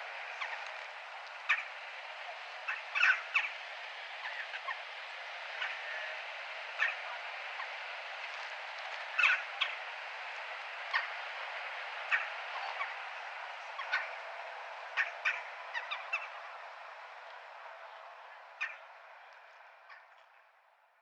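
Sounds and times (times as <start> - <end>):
town background hiss: 0.0 - 20.5
crow cawing: 2.7 - 3.5.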